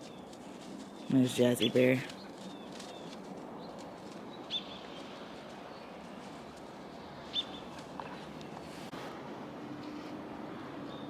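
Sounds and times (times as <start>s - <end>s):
bird chirping: 0.0s - 6.0s, 7.3s - 8.4s
faint outdoor hiss: 0.0s - 11.0s.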